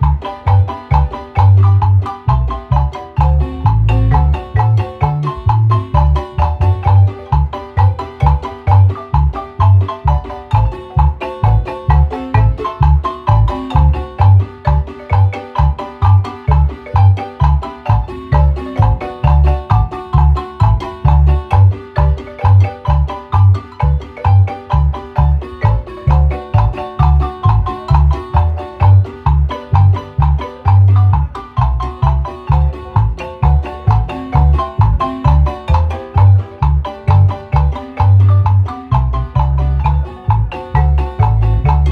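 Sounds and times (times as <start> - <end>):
low bass beat: 0.0 - 41.9
marimba melody: 0.0 - 41.9.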